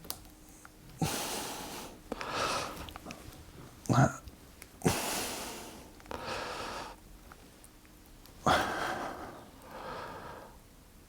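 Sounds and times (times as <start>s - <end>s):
person breathing out heavily: 4.8s - 7.0s, 8.5s - 10.6s.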